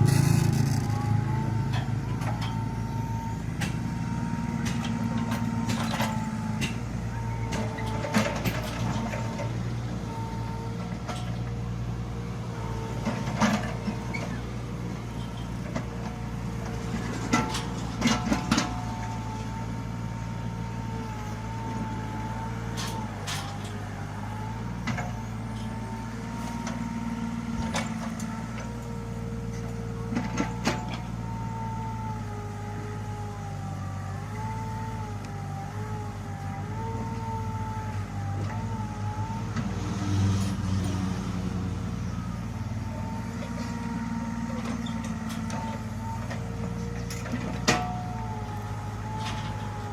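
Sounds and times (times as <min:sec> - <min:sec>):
hydraulic whine: 0:00.0 - 0:11.4
diesel engine running: 0:00.0 - 0:49.9.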